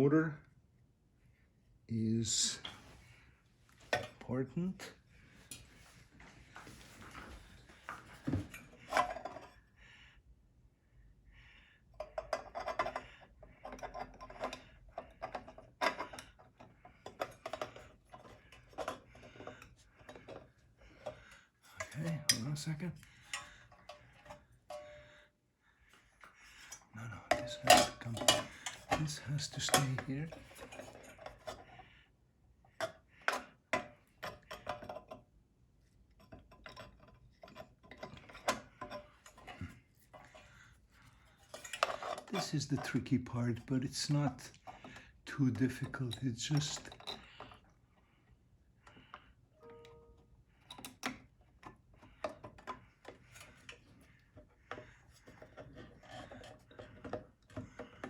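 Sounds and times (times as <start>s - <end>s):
small parts clicking and clattering: 12.0s - 25.0s, 26.5s - 31.7s, 32.8s - 35.3s, 36.2s - 43.0s, 44.0s - 47.7s.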